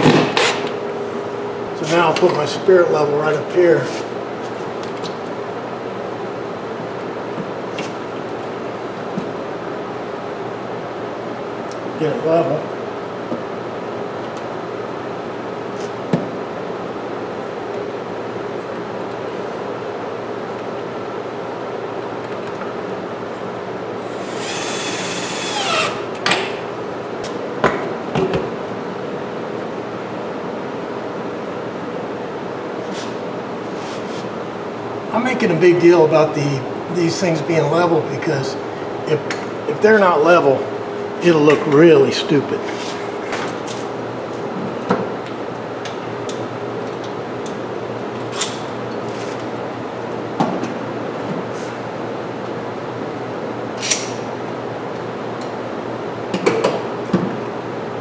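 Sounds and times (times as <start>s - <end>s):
steady low hum: 0.0s - 58.0s
power drill driving a screw: 24.1s - 26.1s.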